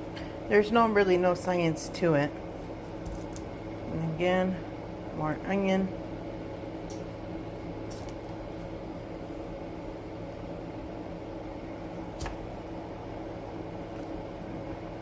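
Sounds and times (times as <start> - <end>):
appliance fan humming: 0.0 - 15.0.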